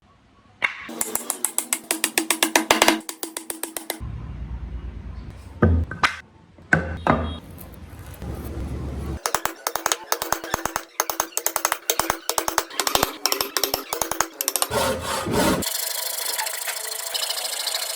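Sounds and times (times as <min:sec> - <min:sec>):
music with fast percussive beat: 0:00.9 - 0:04.0, 0:09.2 - 0:14.7.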